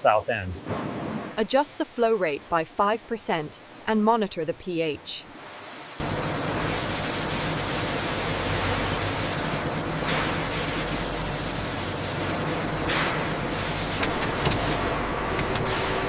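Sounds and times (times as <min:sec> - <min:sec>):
low machine hum: 0:06.0 - 0:16.0.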